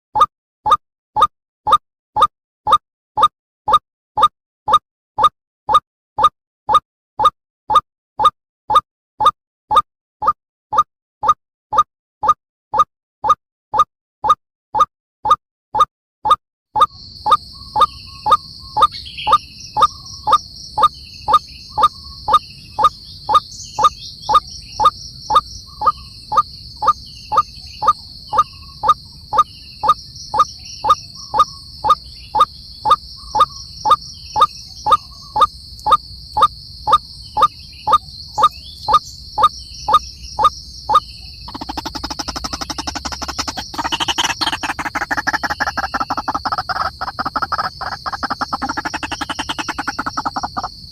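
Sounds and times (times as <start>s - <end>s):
high-pitched insect drone: 24.3s - 50.9s.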